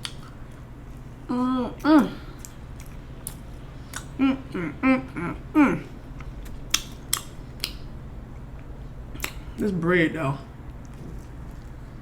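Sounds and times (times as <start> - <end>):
wet chewing mouth clicks: 0.0 - 0.4, 6.2 - 7.8, 9.2 - 9.4
hummed vocal sounds: 4.0 - 6.0.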